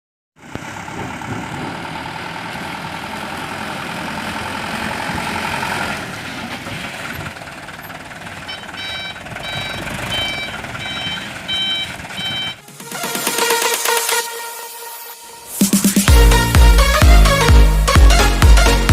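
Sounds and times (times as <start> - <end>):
diesel engine running: 0.4 - 18.9
reversing alarm beeping: 8.4 - 14.2.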